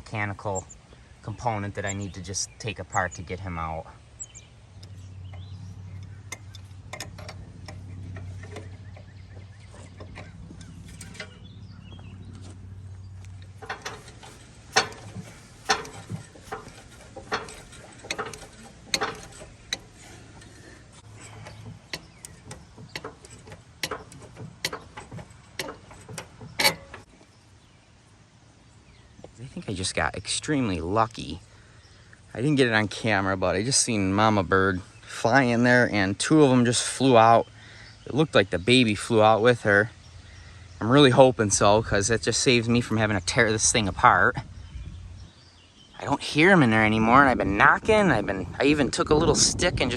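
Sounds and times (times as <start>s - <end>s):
low steady hum: 0.0s - 32.9s
knocking on metal: 13.5s - 20.2s, 21.0s - 27.1s.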